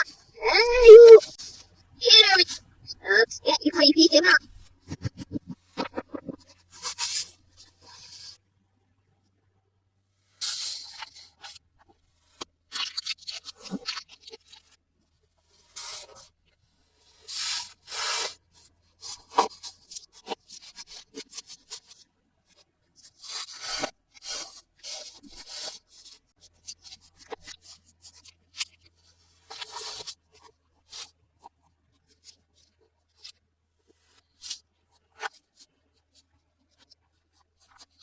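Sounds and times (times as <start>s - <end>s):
hands rubbing and tearing packaging: 4.2s - 8.4s, 12.2s - 14.8s, 15.4s - 16.3s, 17.0s - 22.0s, 23.0s - 31.6s.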